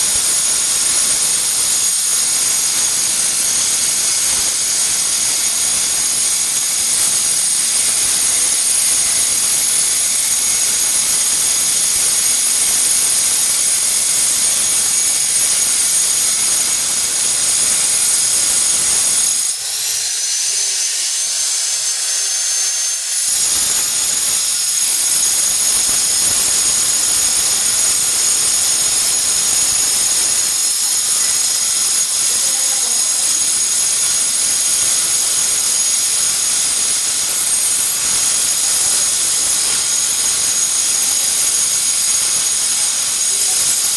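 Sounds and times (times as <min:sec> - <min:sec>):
angle grinder motor whine: 0:00.0 - 0:43.9
grinder disc cutting glass: 0:00.0 - 0:43.9.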